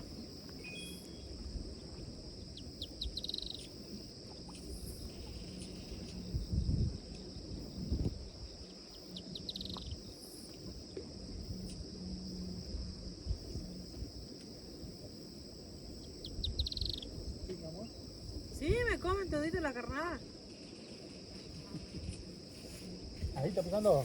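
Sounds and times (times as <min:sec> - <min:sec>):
insects trilling: 0:00.0 - 0:24.0
birds chirping: 0:02.4 - 0:05.8, 0:08.6 - 0:10.0, 0:16.0 - 0:18.2.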